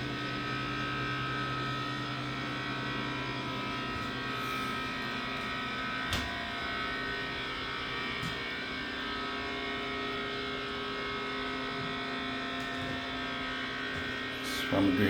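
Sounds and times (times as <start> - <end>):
refrigerator cooling unit humming: 0.0 - 15.0.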